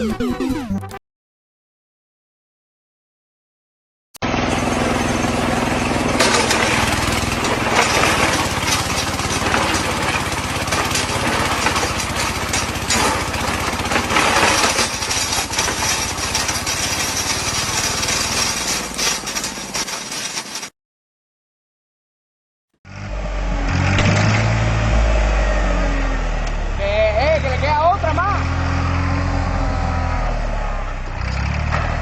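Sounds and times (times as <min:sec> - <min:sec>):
rattling engine-driven machine running: 0:04.2 - 0:20.7.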